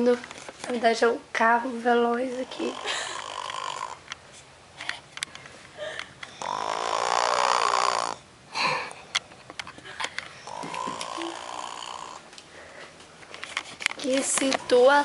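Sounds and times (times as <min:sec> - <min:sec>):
woman snoring: 0:02.2 - 0:04.0, 0:06.3 - 0:08.9, 0:10.4 - 0:12.2
snort: 0:02.3 - 0:04.0, 0:06.3 - 0:09.0, 0:10.4 - 0:12.2.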